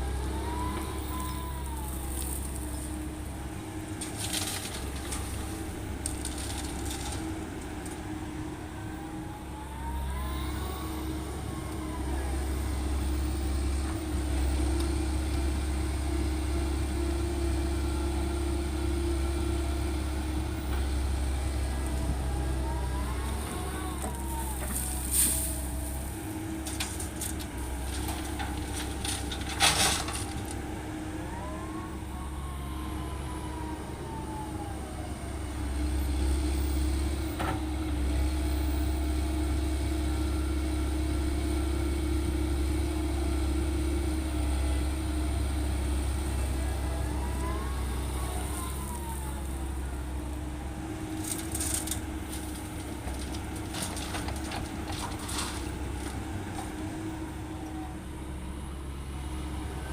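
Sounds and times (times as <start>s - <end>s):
excavator diesel drone: 0.0s - 59.9s.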